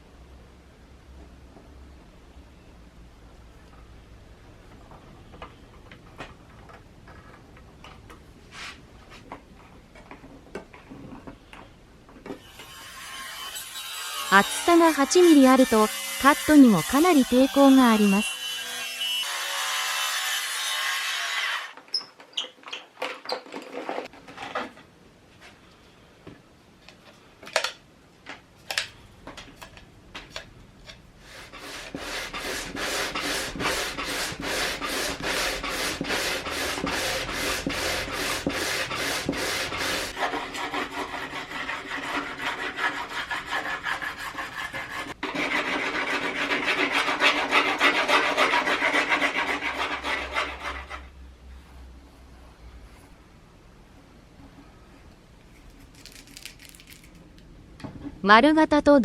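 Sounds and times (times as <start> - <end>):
hand saw rasping: 12.4 - 21.7, 31.3 - 51.1.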